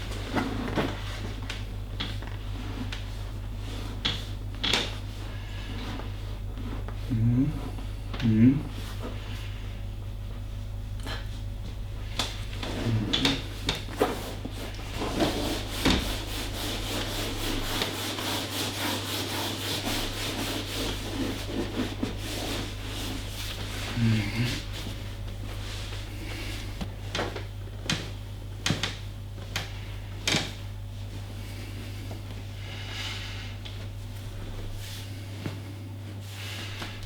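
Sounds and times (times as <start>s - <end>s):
low electrical hum: 0.0s - 37.0s
hands rubbing skin and clothing: 11.1s - 28.2s.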